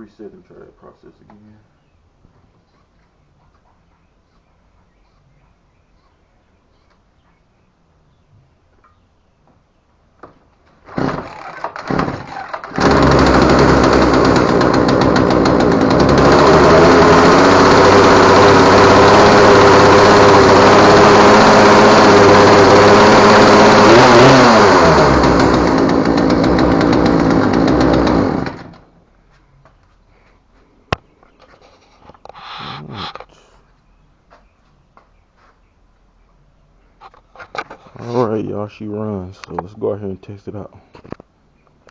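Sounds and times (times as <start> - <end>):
chainsaw engine running: 10.8 - 28.9
chainsaw pull-start: 10.8 - 28.9.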